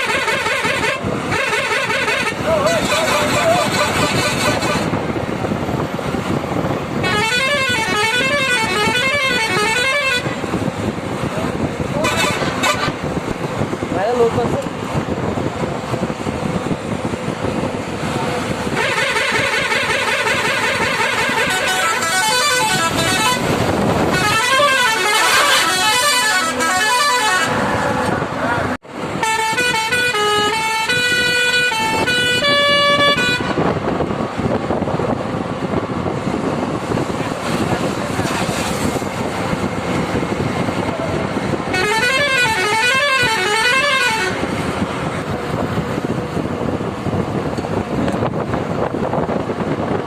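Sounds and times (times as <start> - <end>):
truck musical horn warbling: 0.0 - 5.2, 6.9 - 10.9, 11.8 - 13.2, 18.4 - 33.9, 39.5 - 45.3
road noise: 0.0 - 50.0.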